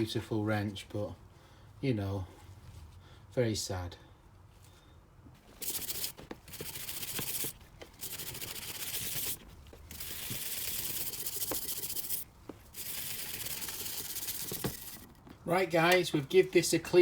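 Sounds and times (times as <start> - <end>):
scrubbing metal tool: 5.6 - 15.1.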